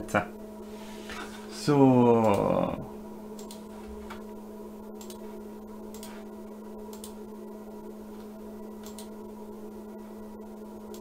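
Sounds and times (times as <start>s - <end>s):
low electrical hum: 0.0s - 11.0s
faint irregular clicks: 3.4s - 4.2s, 5.0s - 5.2s, 6.9s - 7.2s, 8.2s - 9.2s.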